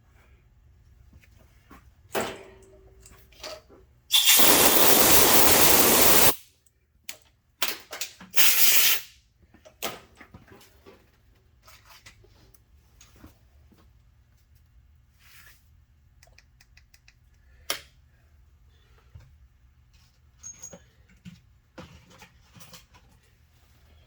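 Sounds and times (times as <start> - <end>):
hissing spray blasts: 4.1 - 6.4.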